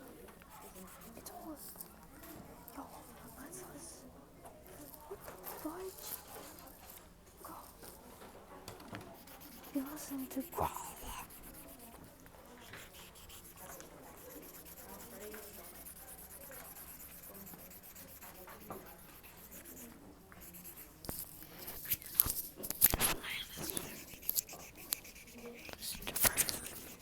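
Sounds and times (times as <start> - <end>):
muffled background talking: 0.0 - 27.0
rubbing on microphone: 9.1 - 27.0.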